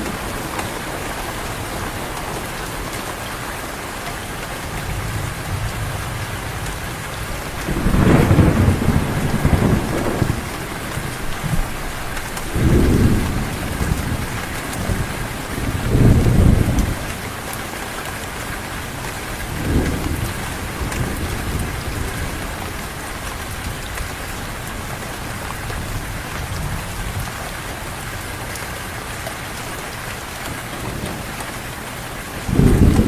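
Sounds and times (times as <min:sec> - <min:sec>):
heavy rain falling: 0:00.0 - 0:33.0
thunder rumbling: 0:04.7 - 0:17.6, 0:19.3 - 0:25.0, 0:32.4 - 0:33.0.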